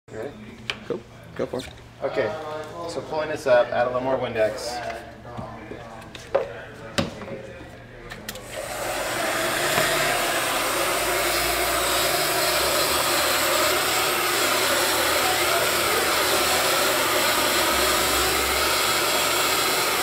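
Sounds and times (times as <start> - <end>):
hot-air blower rushing hiss: 8.4 - 20.0.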